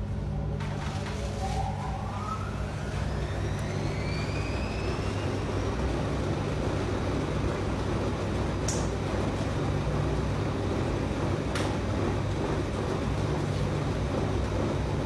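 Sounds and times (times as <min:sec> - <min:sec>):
washing machine motor hum: 0:00.0 - 0:15.0
rising motor whine: 0:02.0 - 0:05.6.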